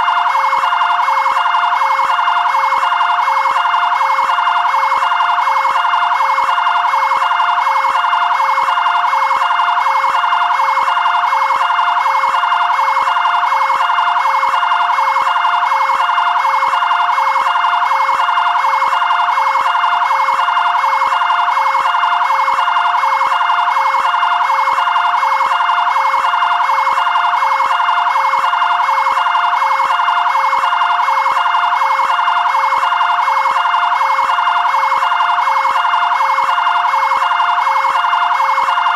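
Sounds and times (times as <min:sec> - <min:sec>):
two-tone siren: 0:00.0 - 0:38.9.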